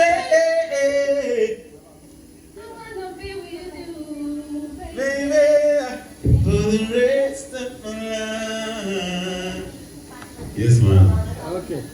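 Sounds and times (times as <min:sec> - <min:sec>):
low thump: 0:06.2 - 0:06.8.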